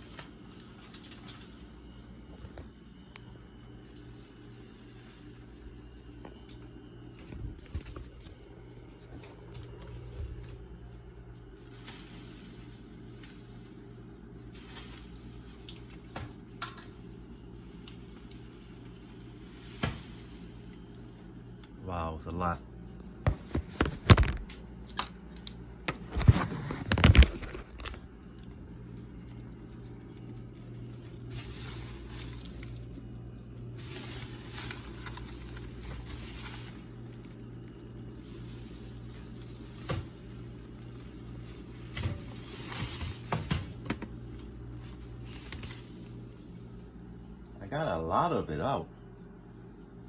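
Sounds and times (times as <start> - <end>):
dirt falling rustling: 28.8 - 46.4.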